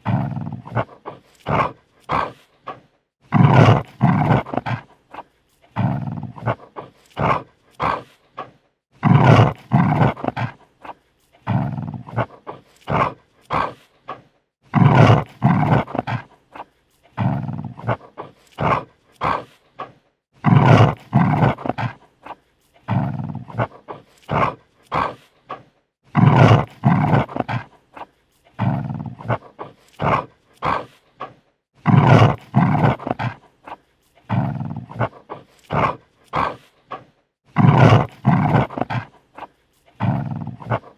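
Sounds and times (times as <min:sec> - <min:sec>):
dog snarling and growling: 0:00.0 - 0:40.9.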